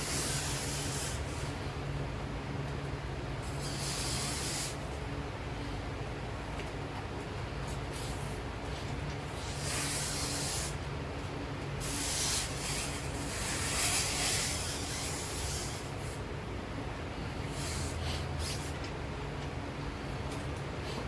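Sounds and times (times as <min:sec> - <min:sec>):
shoe sole rubbing on machine: 0:00.0 - 0:01.6, 0:03.4 - 0:04.9, 0:09.4 - 0:10.8, 0:11.8 - 0:16.2, 0:17.5 - 0:18.8
low machine hum: 0:00.0 - 0:21.0.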